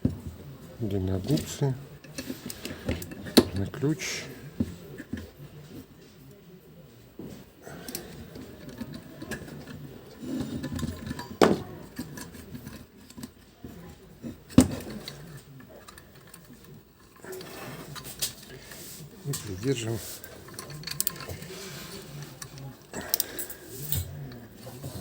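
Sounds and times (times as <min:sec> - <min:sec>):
pliers scraping metal: 0:19.2 - 0:24.2.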